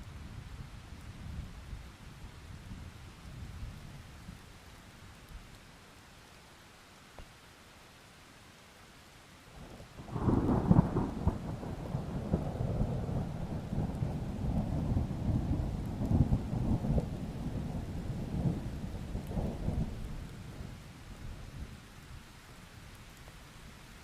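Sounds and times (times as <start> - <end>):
rain hiss: 0.0 - 24.0
thunder rumbling: 10.0 - 20.8.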